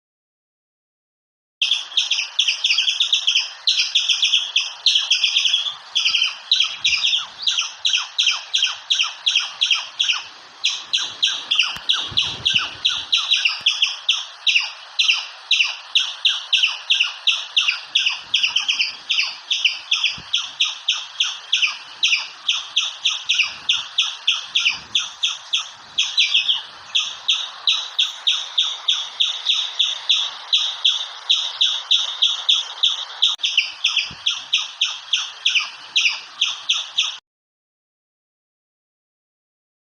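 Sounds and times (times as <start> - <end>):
squirrel chirping: 1.6 - 37.2.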